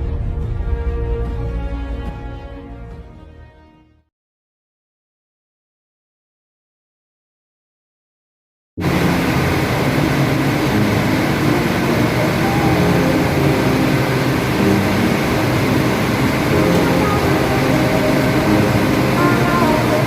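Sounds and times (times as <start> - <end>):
machinery with deep hum: 8.8 - 20.0.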